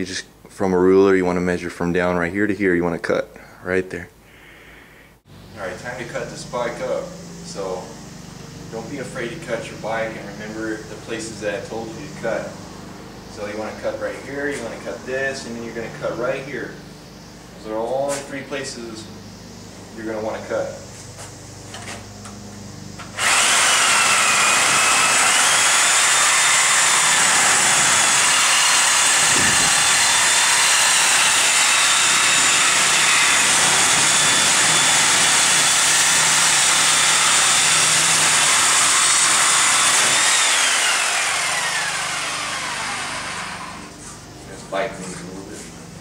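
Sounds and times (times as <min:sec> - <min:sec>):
power cutting tool whining: 0:21.6 - 0:45.0.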